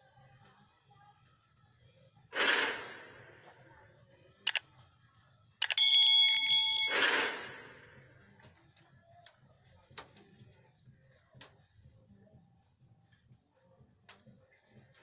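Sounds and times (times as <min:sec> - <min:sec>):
breathy rush of noise: 0:02.4 - 0:03.6, 0:06.4 - 0:08.1
steady ringing tone: 0:05.6 - 0:08.2.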